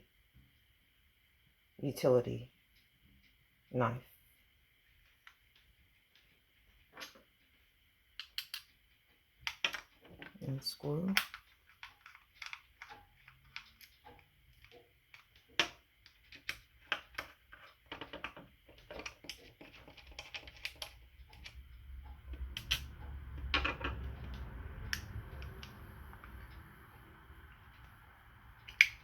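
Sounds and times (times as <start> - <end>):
low handling rumble: 21.2 - 29.0.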